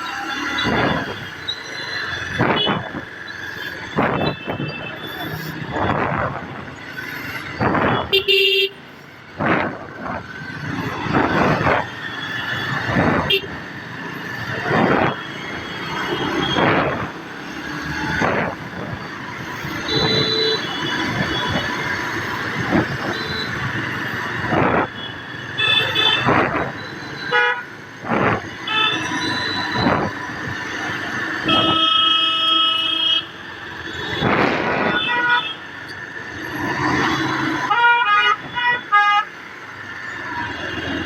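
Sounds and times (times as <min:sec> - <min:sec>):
vehicles passing: 0:00.0 - 0:41.0
vehicle horns honking: 0:08.0 - 0:08.8, 0:13.2 - 0:13.5, 0:19.9 - 0:21.1, 0:25.0 - 0:26.3, 0:27.3 - 0:27.7, 0:28.7 - 0:29.8, 0:31.4 - 0:33.3, 0:34.8 - 0:35.7.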